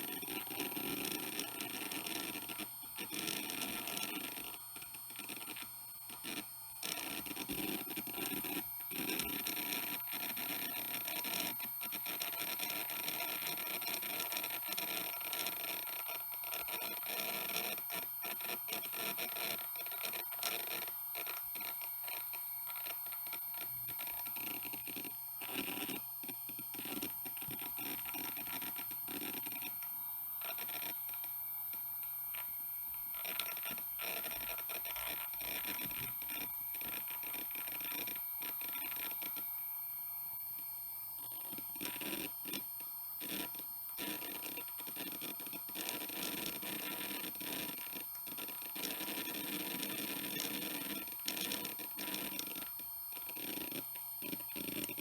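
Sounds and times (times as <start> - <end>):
hard drive seeking clicks: 0.0 - 39.7.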